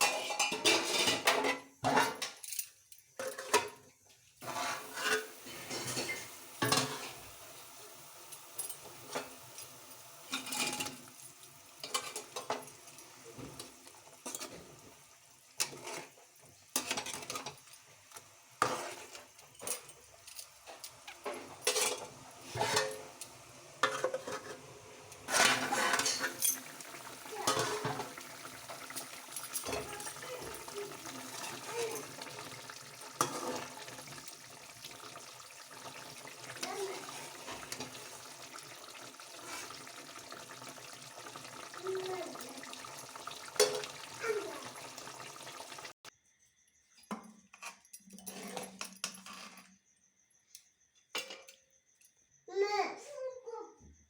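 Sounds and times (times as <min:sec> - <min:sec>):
metal spoon scraping a pan: 0:00.0 - 0:02.4, 0:04.4 - 0:07.2, 0:10.4 - 0:11.1, 0:15.6 - 0:16.2, 0:18.6 - 0:19.3, 0:20.7 - 0:30.5, 0:33.1 - 0:34.2.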